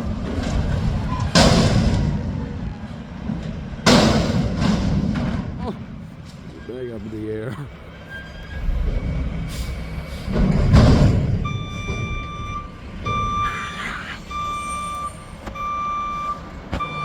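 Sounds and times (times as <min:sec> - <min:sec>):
garbage truck diesel engine: 0:00.0 - 0:17.0
reversing beeps: 0:11.2 - 0:17.0.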